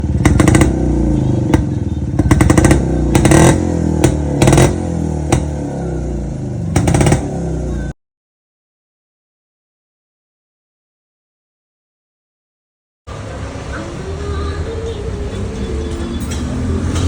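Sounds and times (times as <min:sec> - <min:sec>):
two-stroke motorcycle engine running: 0:00.0 - 0:07.9.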